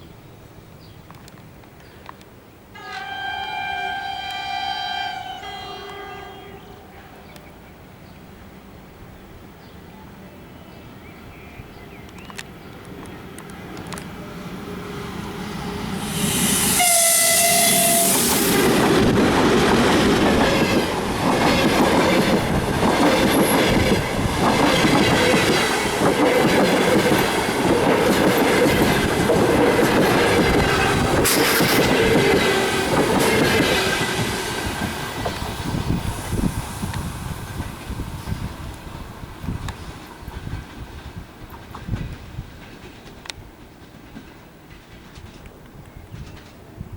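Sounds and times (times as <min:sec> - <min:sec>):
train horn blast: 0:02.8 - 0:07.2, 0:15.9 - 0:18.8
train clattering over rail joints: 0:17.5 - 0:36.0, 0:40.2 - 0:46.7.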